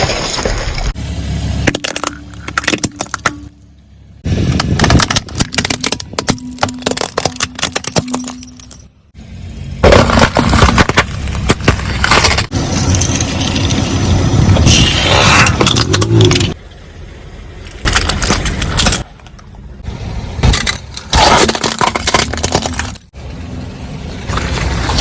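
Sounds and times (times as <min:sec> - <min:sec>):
tyre and engine rumble: 0:00.0 - 0:25.0
tyre crushing brittle objects: 0:04.4 - 0:08.9, 0:09.8 - 0:14.1, 0:17.8 - 0:19.1, 0:20.4 - 0:23.1.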